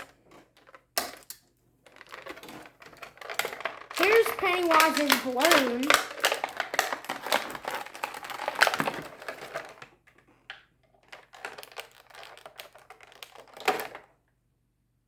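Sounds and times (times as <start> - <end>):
toy packaging crinkling: 1.9 - 9.8, 11.0 - 14.1.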